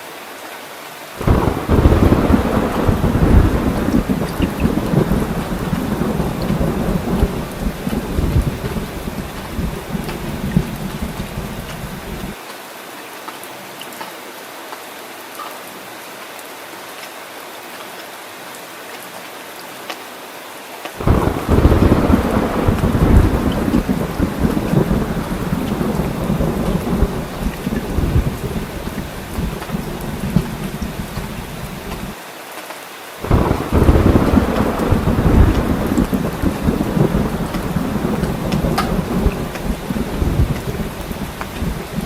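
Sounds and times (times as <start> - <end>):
heavy rain falling: 0.0 - 42.0
low rolling thunder: 1.2 - 12.4, 21.0 - 32.2, 33.2 - 42.0.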